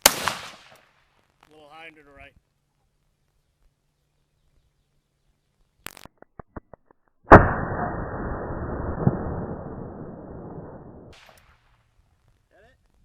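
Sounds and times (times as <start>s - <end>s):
rifle shot with rumbling decay: 0.0s - 0.8s, 7.3s - 11.4s.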